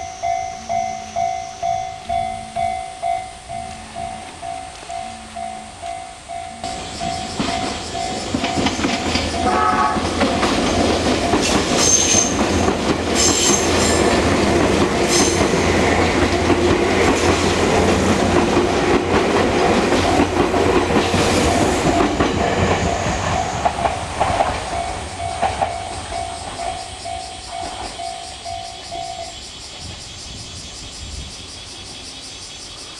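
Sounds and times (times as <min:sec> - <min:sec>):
level crossing alarm bell: 0:00.0 - 0:12.5, 0:21.4 - 0:29.4
train wheels rattling over rail joints: 0:00.0 - 0:30.0.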